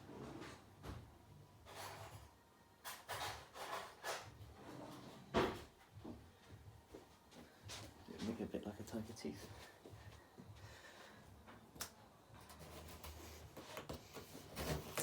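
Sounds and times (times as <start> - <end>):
cardboard box scraping and rubbing: 12.5 - 15.0.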